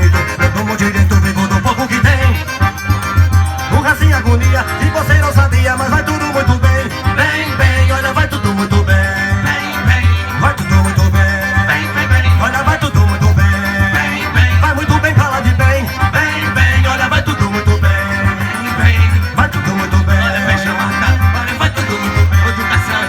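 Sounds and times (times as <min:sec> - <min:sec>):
live band playing: 0:00.0 - 0:23.0
pulsing bass beat: 0:00.0 - 0:23.0.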